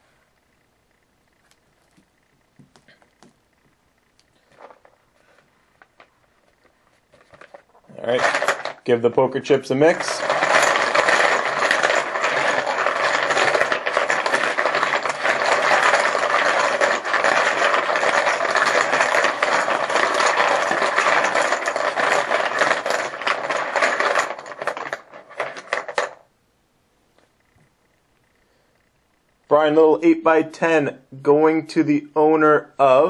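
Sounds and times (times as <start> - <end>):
poker chips clattering: 7.1 - 26.2.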